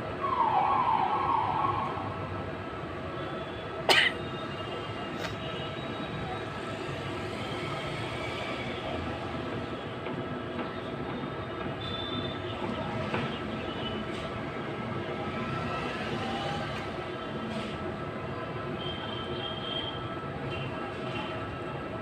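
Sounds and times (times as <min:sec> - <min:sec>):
person coughing: 0:03.9 - 0:04.2.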